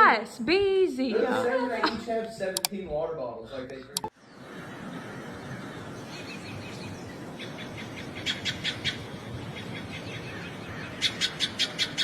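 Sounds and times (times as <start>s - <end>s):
background hiss: 0.0s - 12.0s
bird chirping: 4.0s - 12.0s.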